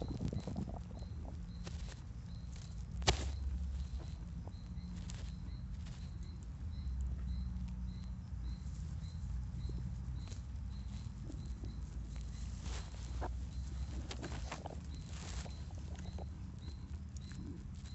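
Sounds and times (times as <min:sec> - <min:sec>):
horse's stomach growling: 0:00.0 - 0:01.6, 0:11.0 - 0:17.9.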